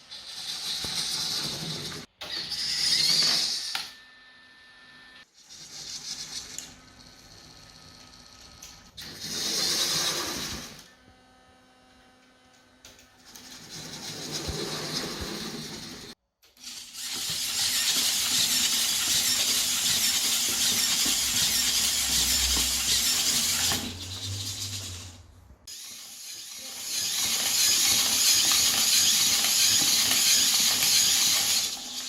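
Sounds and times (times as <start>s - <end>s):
servo motors whining: 13.5s - 32.0s.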